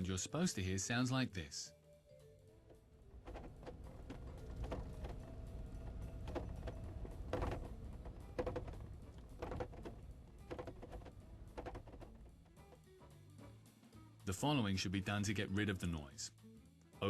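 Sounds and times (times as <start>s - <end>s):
low road rumble: 2.2s - 16.1s
car roof knocking and clattering: 2.6s - 13.2s.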